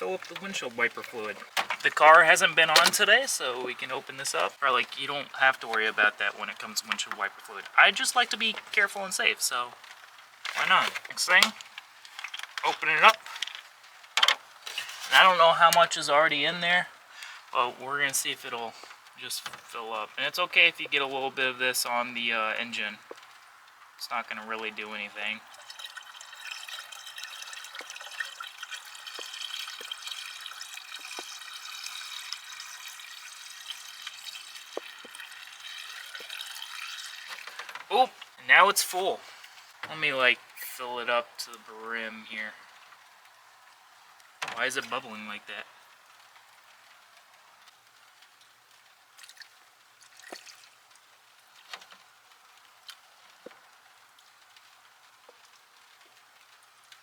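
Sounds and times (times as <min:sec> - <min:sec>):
fluid pouring from a jug: 0:00.0 - 0:16.4, 0:25.2 - 0:38.4, 0:49.2 - 0:52.9
light rain hiss: 0:00.0 - 0:57.0
liquid plops: 0:25.4 - 0:38.4, 0:50.1 - 0:50.7.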